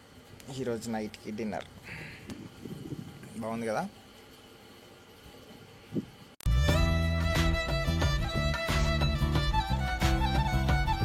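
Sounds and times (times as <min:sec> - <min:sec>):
instrumental music with steady beat: 0:06.4 - 0:11.0
bowed string melody: 0:06.5 - 0:11.0.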